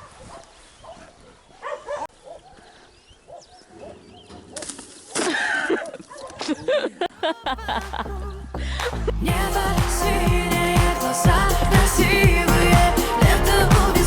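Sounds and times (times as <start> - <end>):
dog barking and whining: 1.6 - 2.5.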